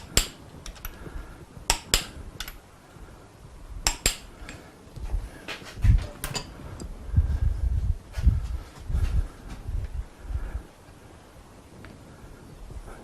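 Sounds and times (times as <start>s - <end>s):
metal tools clinking: 6.0s - 6.9s.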